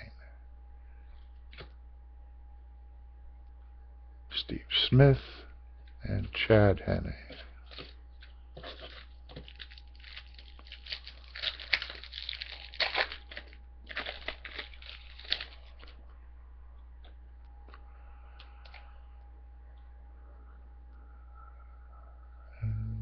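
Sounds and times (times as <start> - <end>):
wrapper being torn and crinkled: 8.6 - 16.1.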